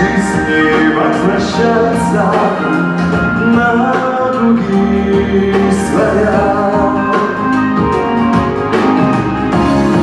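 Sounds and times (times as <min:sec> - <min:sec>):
pop ballad by live band: 0:00.0 - 0:10.0.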